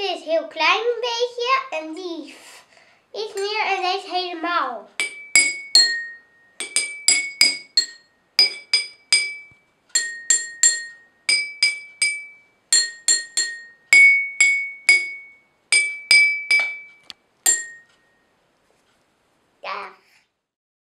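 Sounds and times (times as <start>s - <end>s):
water glasses tapped ringing: 5.0s - 18.2s.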